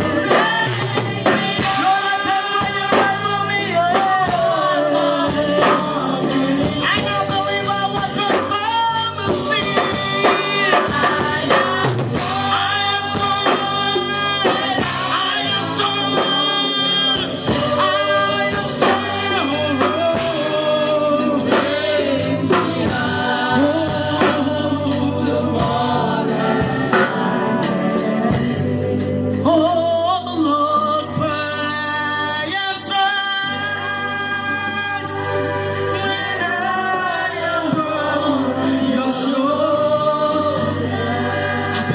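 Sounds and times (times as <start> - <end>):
gospel choir singing: 0.0 - 41.9
instrumental accompaniment: 0.0 - 41.9
steady bass line: 0.0 - 41.9.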